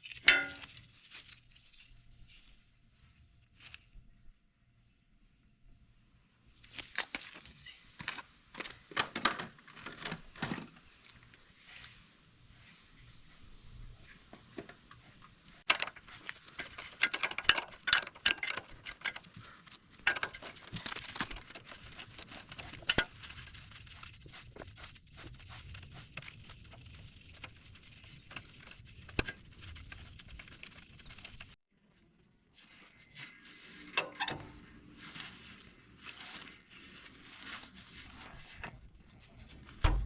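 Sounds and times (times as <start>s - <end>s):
metal tools clicking and knocking: 0.2s - 0.7s, 15.6s - 23.1s, 34.0s - 34.6s.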